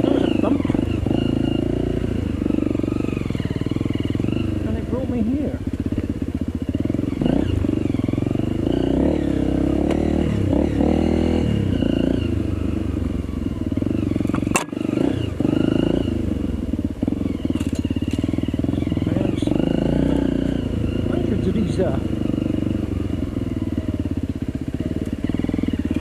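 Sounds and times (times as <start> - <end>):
motorbike engine revving: 0.0 - 26.0.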